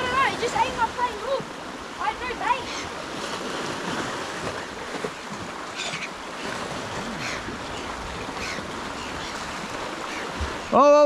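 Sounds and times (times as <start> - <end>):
ocean surf breaking on shore: 0.0 - 11.0.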